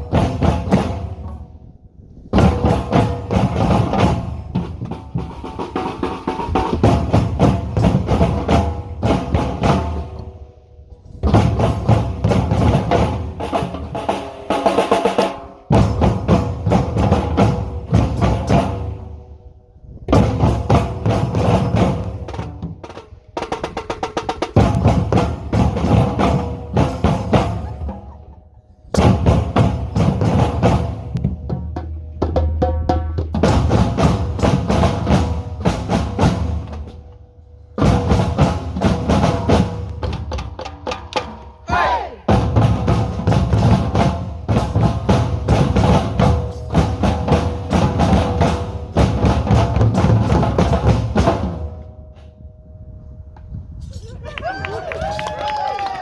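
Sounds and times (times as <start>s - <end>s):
group drumming: 24.5s - 28.2s, 37.8s - 51.7s.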